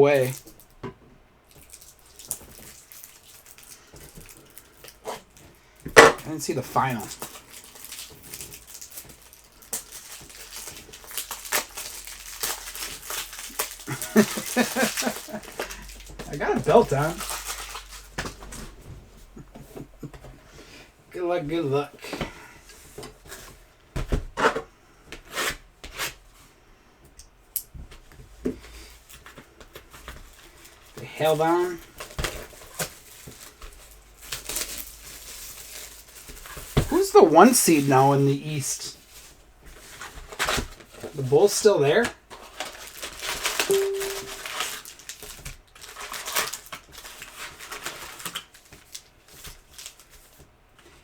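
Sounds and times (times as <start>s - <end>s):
card wrappers rustling: 1.5s - 19.4s, 28.8s - 51.0s
short steady tone: 43.7s - 44.4s.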